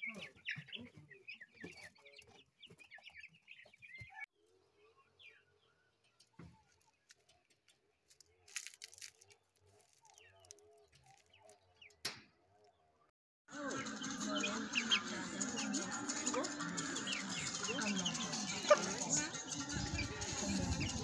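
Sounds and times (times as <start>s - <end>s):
birds chirping: 0.0s - 7.5s, 8.1s - 21.0s
birds cooing: 13.6s - 21.0s.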